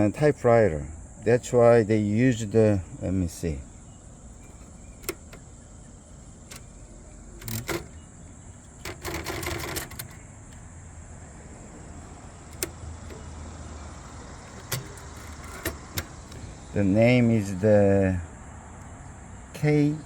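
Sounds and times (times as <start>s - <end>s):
typewriter mechanical clicks: 4.3s - 10.6s, 11.4s - 16.7s
typewriter rattling clatter: 4.3s - 10.6s, 11.8s - 16.7s.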